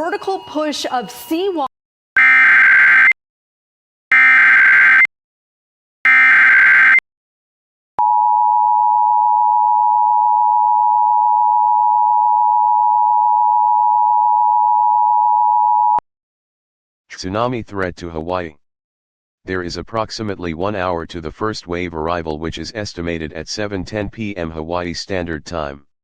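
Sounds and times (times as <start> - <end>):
two-tone alert signal: 0.0 - 3.2.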